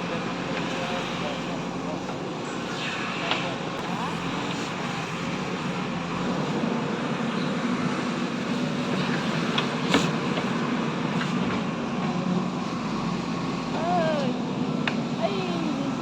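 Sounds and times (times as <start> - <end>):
low mechanical rumble: 10.8 - 16.0.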